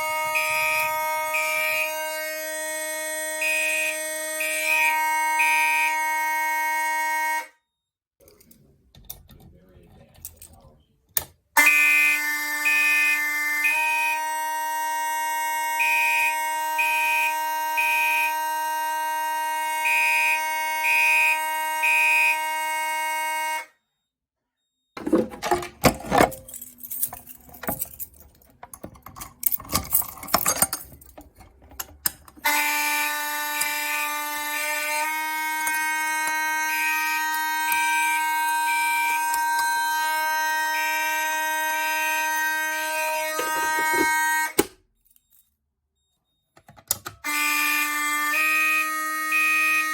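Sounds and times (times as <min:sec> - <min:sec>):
mechanical horn pulsing: 0:00.0 - 0:07.5, 0:11.6 - 0:23.7, 0:32.4 - 0:44.7, 0:47.2 - 0:49.9
fire alarm horn steady tone: 0:00.0 - 0:07.9, 0:11.6 - 0:25.2, 0:32.4 - 0:49.9.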